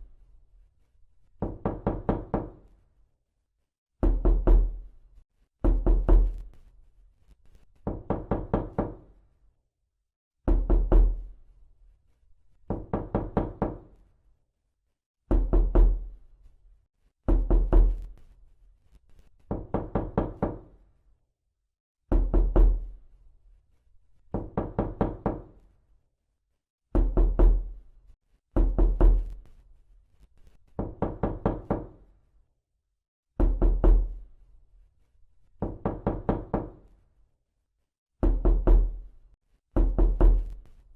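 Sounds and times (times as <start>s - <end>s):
knocking on a door: 1.4s - 2.7s, 4.0s - 4.8s, 5.6s - 6.5s, 7.8s - 9.1s, 10.4s - 11.3s, 12.7s - 13.9s, 15.3s - 16.1s, 17.3s - 18.1s, 19.5s - 20.8s, 22.1s - 22.9s, 24.3s - 25.5s, 26.9s - 27.7s, 28.6s - 29.4s, 30.8s - 32.0s, 33.4s - 34.2s, 35.6s - 36.8s, 38.2s - 39.0s, 39.8s - 40.6s.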